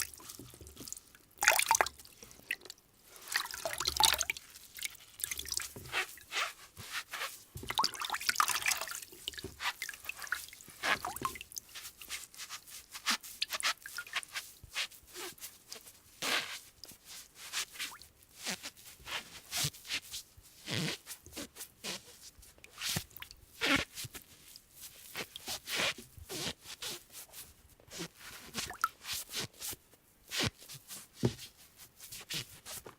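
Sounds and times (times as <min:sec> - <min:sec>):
wet hands scrubbing: 0:00.0 - 0:20.1.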